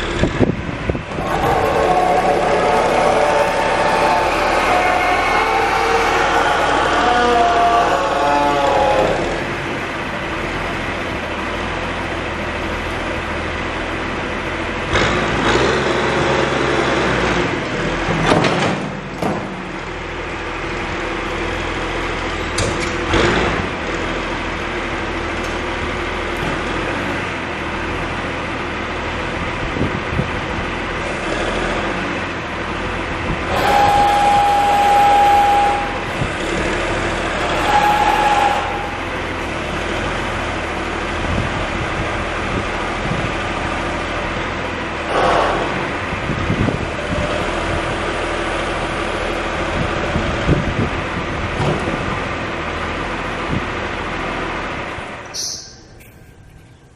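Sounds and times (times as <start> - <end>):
backhoe diesel engine running: 0.0 - 56.9
steady high tone: 1.1 - 10.7, 33.5 - 36.2, 55.3 - 56.6.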